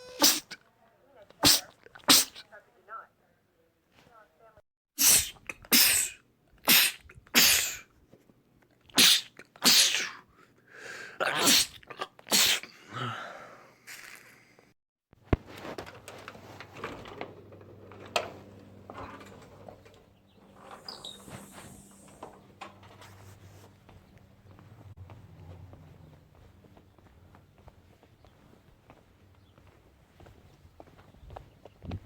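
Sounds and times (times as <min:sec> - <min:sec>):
man sneezing: 0:00.0 - 0:00.6, 0:01.4 - 0:02.5, 0:05.0 - 0:07.9, 0:09.0 - 0:10.3, 0:11.2 - 0:13.4.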